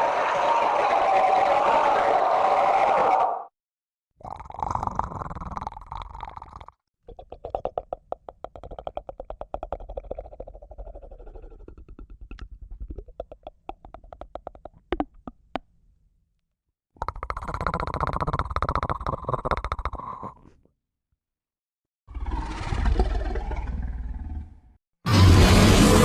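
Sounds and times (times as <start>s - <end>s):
creature growling: 4.2s - 12.4s, 17.0s - 20.5s.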